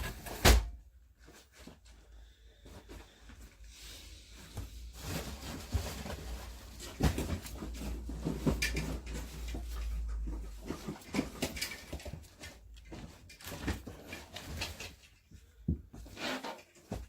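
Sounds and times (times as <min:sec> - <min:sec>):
rustling handling noise: 0:00.0 - 0:17.0.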